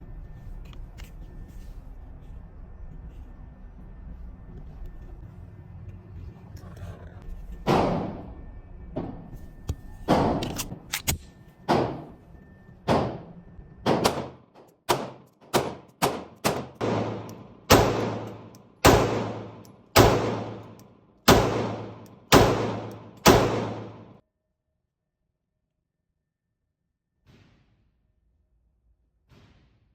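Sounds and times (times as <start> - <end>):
pistol shots echoing: 13.9 - 24.2.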